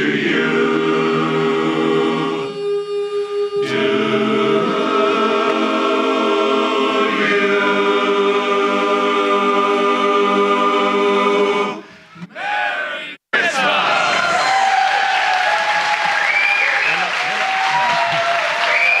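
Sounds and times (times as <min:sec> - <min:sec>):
barbershop chorus singing a cappella: 0:00.0 - 0:13.9.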